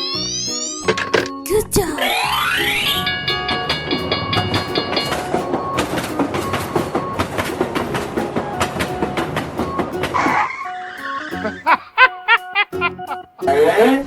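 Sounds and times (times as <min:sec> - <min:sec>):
train wheels clickety-clack: 0:03.1 - 0:10.5.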